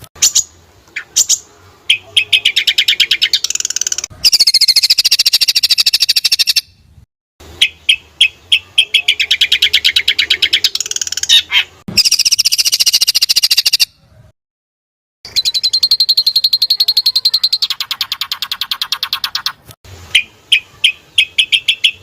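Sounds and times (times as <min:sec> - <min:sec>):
songbird singing rapid trills: 0:00.2 - 0:06.7, 0:07.6 - 0:13.9, 0:15.3 - 0:22.0.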